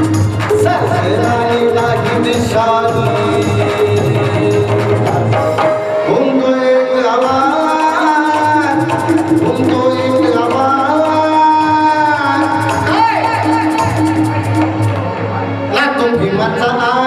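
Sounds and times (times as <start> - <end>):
tabla: 0.0 - 17.0
person singing folk song: 0.4 - 14.0
held melodic tones: 7.3 - 15.8.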